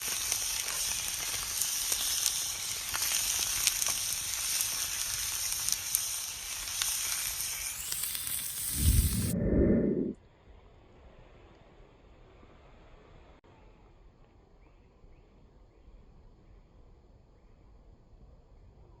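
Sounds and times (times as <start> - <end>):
campfire crackling: 0.0 - 9.6.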